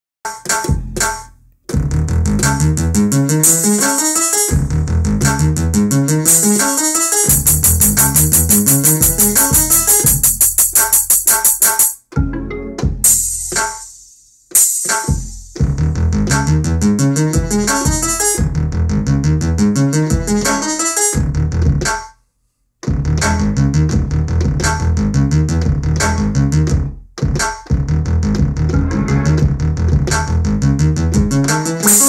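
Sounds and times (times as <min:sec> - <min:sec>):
hip-hop beat: 0:00.3 - 0:22.1, 0:22.8 - 0:32.0
synth chord stabs: 0:28.7 - 0:29.8.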